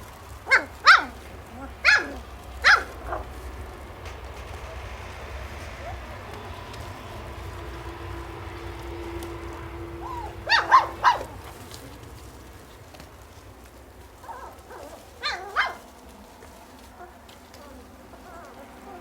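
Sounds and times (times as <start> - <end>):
steady low hum: 0.0 - 19.0
puppies barking: 0.3 - 19.0
soft puppy yips: 0.5 - 3.2, 10.0 - 11.4, 14.2 - 15.8.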